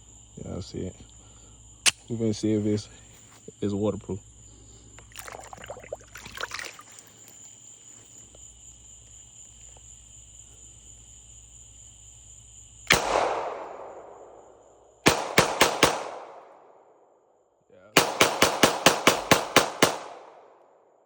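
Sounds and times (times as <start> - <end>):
pistol shots: 12.9 - 14.4, 15.0 - 16.7, 18.0 - 20.6.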